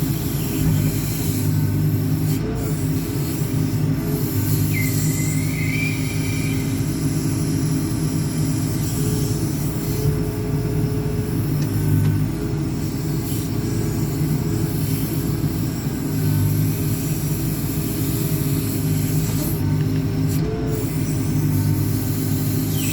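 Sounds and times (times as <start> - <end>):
backhoe boom working: 0.0 - 22.9
diesel engine running: 0.0 - 22.9
high squeal: 4.3 - 8.3, 22.7 - 22.9.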